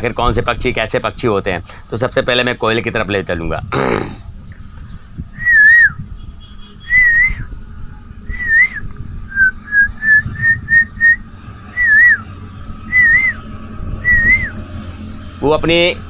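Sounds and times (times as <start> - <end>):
man whistling bird call: 5.4 - 6.1, 6.8 - 7.5, 8.3 - 12.3, 12.9 - 14.6.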